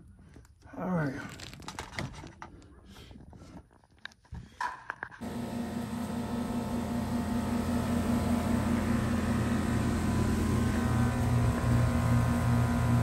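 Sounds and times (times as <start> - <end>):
heat pump unit humming: 5.2 - 13.0.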